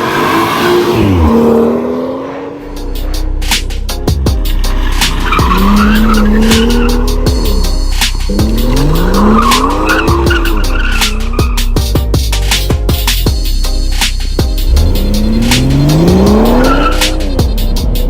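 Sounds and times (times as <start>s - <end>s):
car engine revving: 0.0s - 12.0s, 12.6s - 18.0s
hip-hop beat with heavy bass: 0.4s - 18.0s
tyres squealing: 4.8s - 11.8s.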